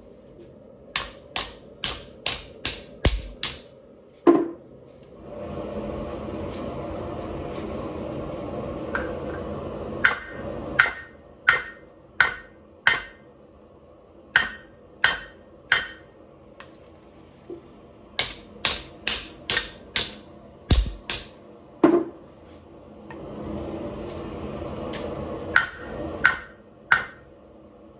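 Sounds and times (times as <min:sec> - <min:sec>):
hammer striking metal on anvil: 0:01.0 - 0:03.7, 0:10.0 - 0:13.4, 0:14.3 - 0:16.8, 0:18.2 - 0:21.4, 0:25.5 - 0:27.4
metallic ring: 0:10.0 - 0:13.6, 0:25.5 - 0:27.6.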